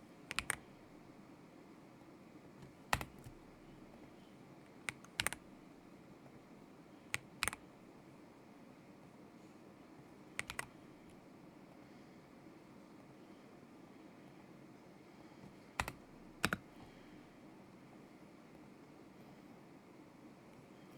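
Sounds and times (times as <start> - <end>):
mechanical keyboard clacks: 0.3 - 0.7, 2.6 - 3.7, 4.9 - 5.5, 7.2 - 7.6, 10.4 - 10.7, 15.8 - 16.7.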